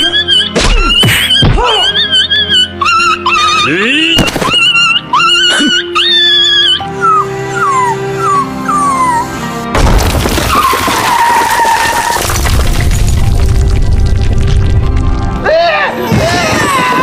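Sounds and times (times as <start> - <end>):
background music: 0.0 - 17.0
dog whining and whimpering: 2.6 - 9.5.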